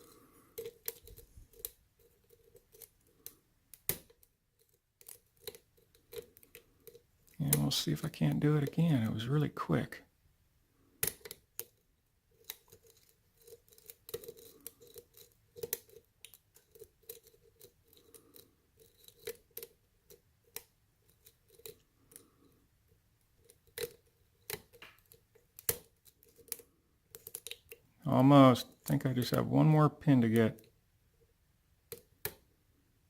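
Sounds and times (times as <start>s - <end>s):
lock pick clicking and scraping: 0.0s - 7.7s, 11.0s - 27.9s, 31.9s - 32.4s.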